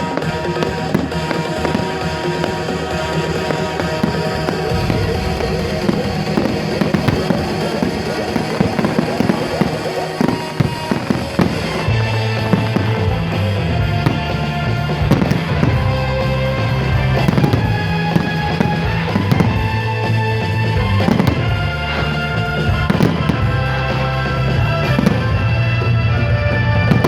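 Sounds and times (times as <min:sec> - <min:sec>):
fireworks bangs and crackles: 0:00.0 - 0:27.0
loud music with bass line: 0:10.2 - 0:27.0.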